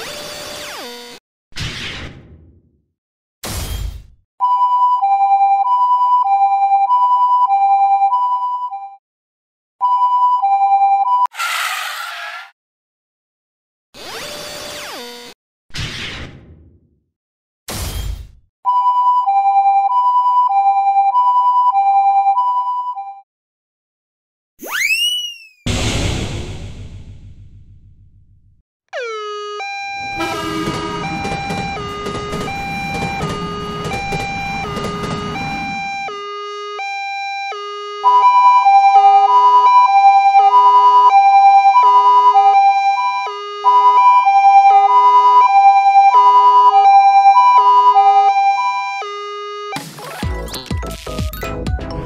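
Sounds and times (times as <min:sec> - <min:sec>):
two-tone ambulance siren: 0:04.4 - 0:09.0, 0:09.8 - 0:11.6, 0:18.7 - 0:23.2, 0:28.9 - 0:49.8
cartoon crash with deep rumble: 0:25.7 - 0:28.3
fluttering higher siren tones: 0:29.0 - 0:37.0.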